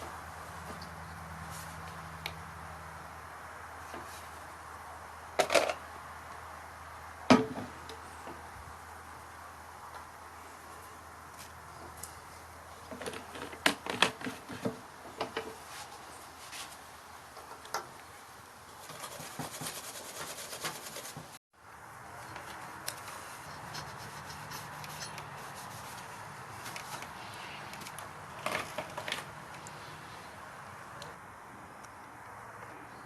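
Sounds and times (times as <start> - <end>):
rubbing or scraping: 18.8 - 21.4, 23.0 - 27.7.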